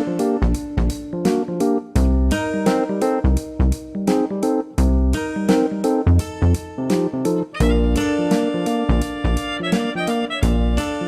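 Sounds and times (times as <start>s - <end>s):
plucked guitar notes: 0.0s - 11.0s
deep bass notes: 0.4s - 1.2s, 2.0s - 2.4s, 3.2s - 4.0s, 4.8s - 5.3s, 6.0s - 10.9s.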